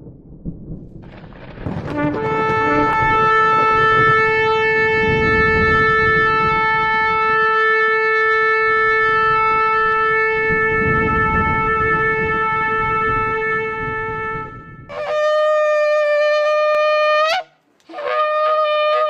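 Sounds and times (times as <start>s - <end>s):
low rumble: 0.0s - 7.6s, 8.2s - 14.9s
shofar blown in long note: 1.9s - 19.0s.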